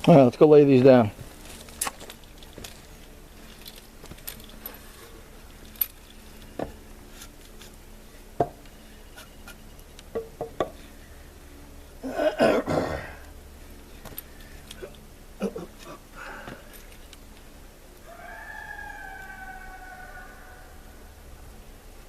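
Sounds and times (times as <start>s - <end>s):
person grunting: 12.0s - 13.2s.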